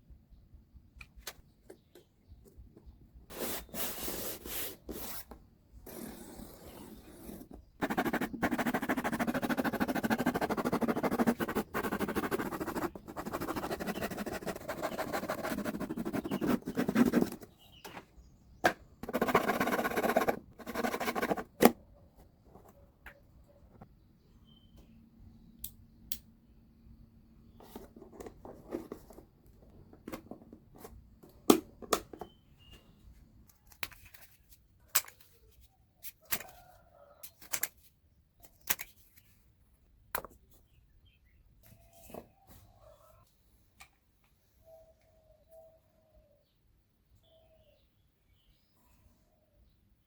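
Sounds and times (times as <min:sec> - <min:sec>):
cardboard scraping and rubbing: 0:19.1 - 0:21.8.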